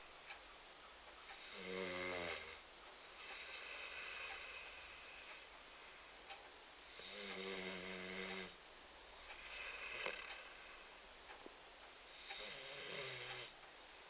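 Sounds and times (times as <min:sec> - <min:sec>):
puppy snoring: 0:01.3 - 0:02.6, 0:03.2 - 0:05.4, 0:06.9 - 0:08.6, 0:09.4 - 0:10.8, 0:12.1 - 0:13.5.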